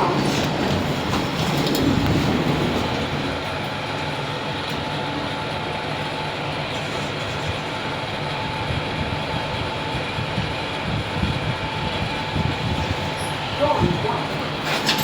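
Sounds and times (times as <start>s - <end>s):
lift car rumbling and humming: 0.0s - 15.0s.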